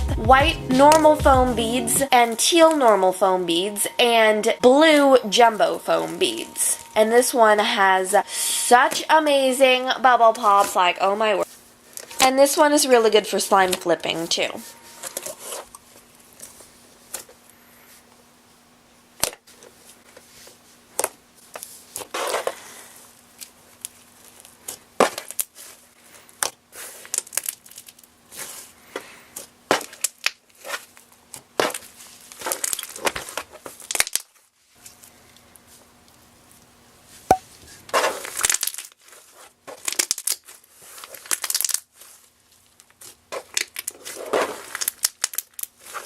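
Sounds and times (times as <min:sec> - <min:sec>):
foam beads crackling and crunching: 0:21.8 - 0:28.8, 0:29.4 - 0:34.8, 0:37.9 - 0:46.0.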